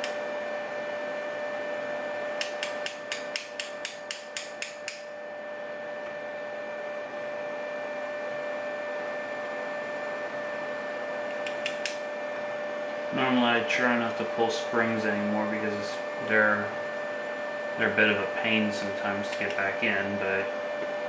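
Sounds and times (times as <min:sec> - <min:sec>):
high-pitched hum: 0:00.0 - 0:21.0.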